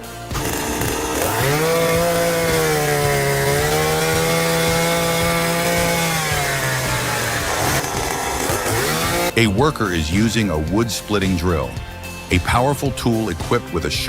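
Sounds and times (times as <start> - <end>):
chainsaw revving and cutting: 0.0 - 9.4.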